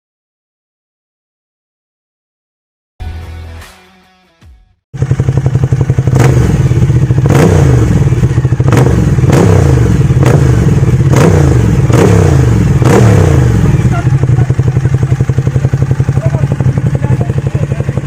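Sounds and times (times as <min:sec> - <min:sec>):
motorcycle engine revving: 0:05.0 - 0:18.0.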